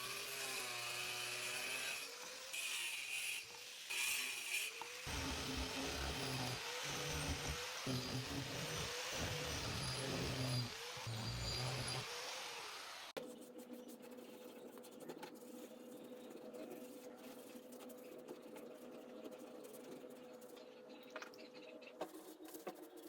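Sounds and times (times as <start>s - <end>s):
power tool running: 0.0s - 13.2s.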